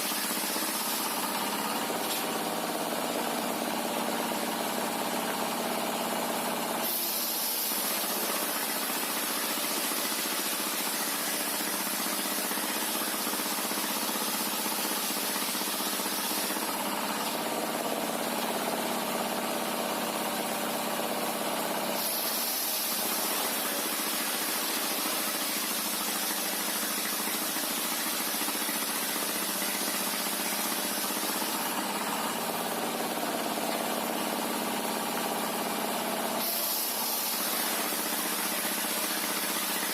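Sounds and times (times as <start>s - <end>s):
loud hiss: 6.8s - 17.4s, 21.9s - 33.6s, 36.4s - 39.9s.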